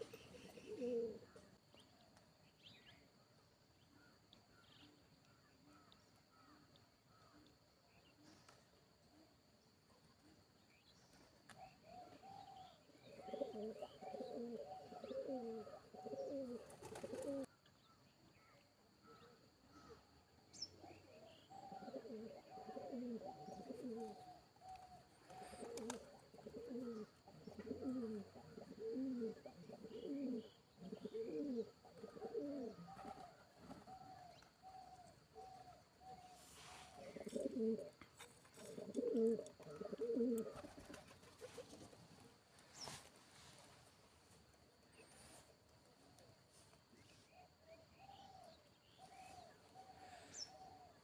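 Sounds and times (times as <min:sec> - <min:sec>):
pigeon cooing: 0:00.0 - 0:01.4, 0:11.8 - 0:17.5, 0:21.5 - 0:42.0.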